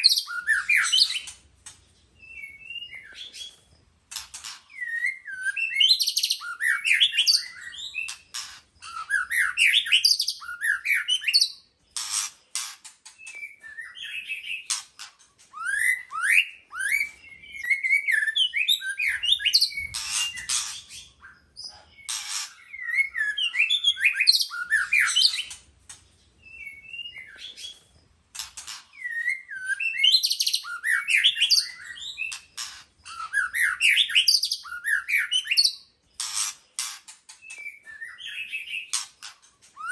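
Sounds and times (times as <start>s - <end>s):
bird singing whistled phrases: 0.0s - 1.3s, 4.7s - 8.2s, 8.9s - 11.6s, 13.2s - 14.7s, 15.6s - 20.6s, 22.7s - 25.5s, 26.5s - 27.8s, 29.0s - 32.4s, 33.1s - 35.9s, 37.5s - 39.0s.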